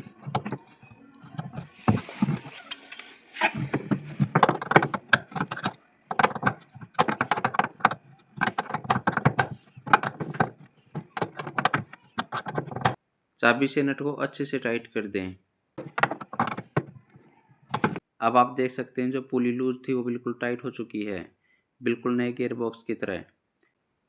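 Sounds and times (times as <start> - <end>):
spanner clicking on metal nut: 2.2 - 2.9.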